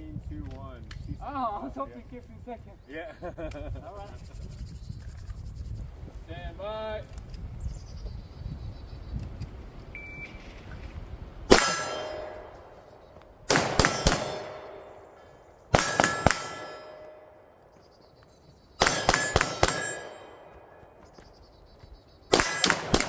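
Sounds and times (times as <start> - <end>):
steel targets ringing: 11.5 - 17.4, 18.8 - 21.0, 22.3 - 23.0
pistol shots: 11.5 - 17.7, 18.8 - 21.0, 22.3 - 23.0.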